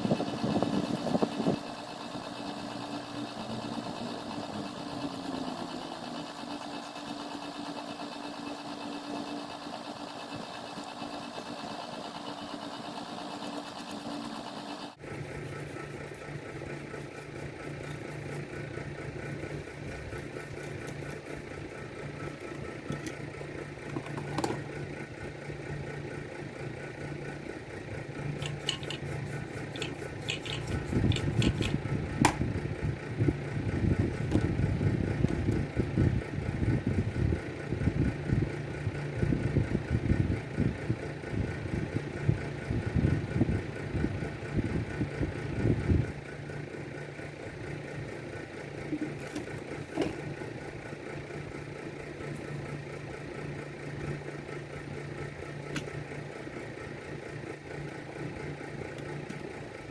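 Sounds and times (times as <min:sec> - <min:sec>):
machine hum: 0:00.0 - 0:59.9
scattered clicks: 0:28.4 - 0:32.4.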